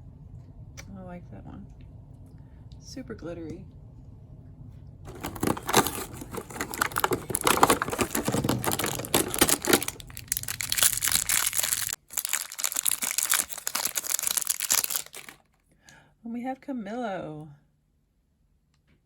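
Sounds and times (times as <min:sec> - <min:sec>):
packaging crinkling and tearing: 0:05.1 - 0:15.5.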